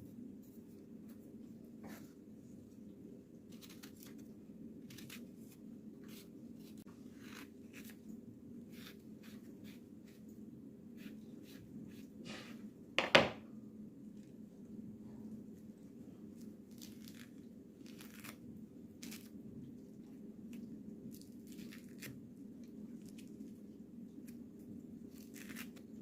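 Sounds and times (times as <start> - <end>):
sharp knock: 13.0 - 13.4.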